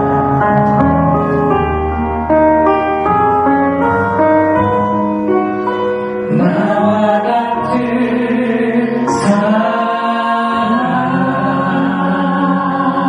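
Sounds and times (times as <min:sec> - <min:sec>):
piano accompaniment: 0:00.0 - 0:13.0
person singing long notes: 0:06.2 - 0:13.0.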